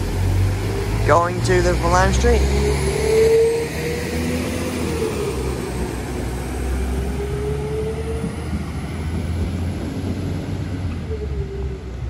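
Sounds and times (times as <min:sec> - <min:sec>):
diesel train engines rumbling: 0:00.0 - 0:12.0
train whine dipping in pitch: 0:00.7 - 0:09.0.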